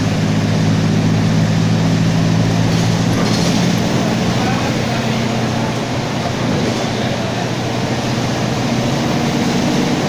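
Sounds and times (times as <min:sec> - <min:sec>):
bus engine and road noise: 0:00.0 - 0:10.0.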